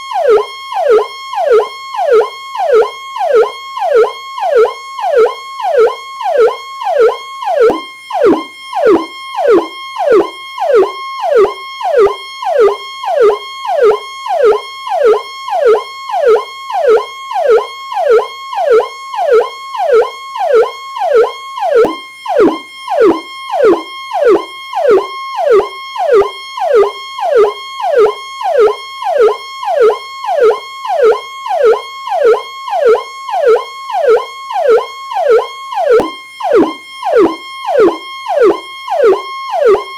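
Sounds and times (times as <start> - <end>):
electronic police siren: 0.0 - 39.9.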